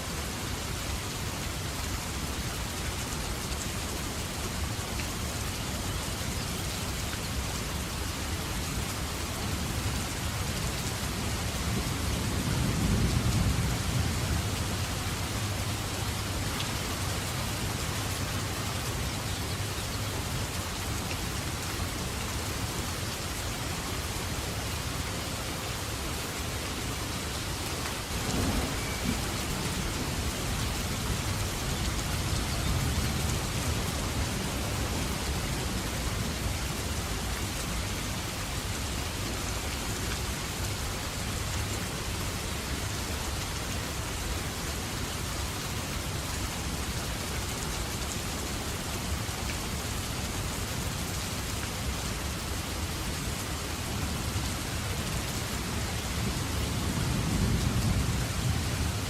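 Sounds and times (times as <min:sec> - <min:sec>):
steady rain falling: 0:00.0 - 0:59.0
low thunder rumbling: 0:28.1 - 0:35.9.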